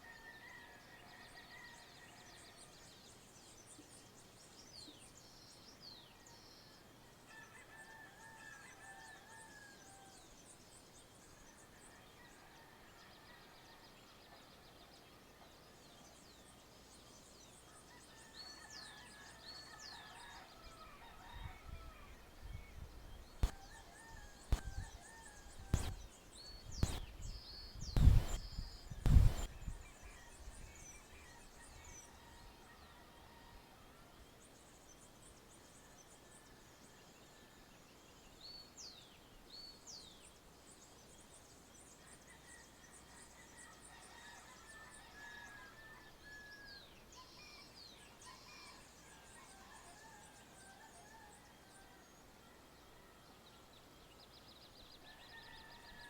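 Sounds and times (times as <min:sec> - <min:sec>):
birds chirping: 0:25.4 - 0:29.7
loud sharp thumps: 0:25.8 - 0:26.0, 0:26.8 - 0:27.0, 0:28.0 - 0:28.4, 0:29.1 - 0:29.5.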